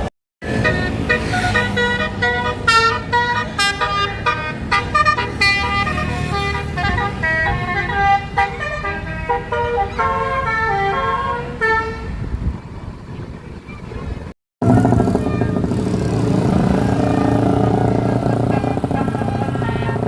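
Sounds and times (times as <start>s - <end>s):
bus musical air horn: 0.0s - 12.3s, 14.6s - 20.0s.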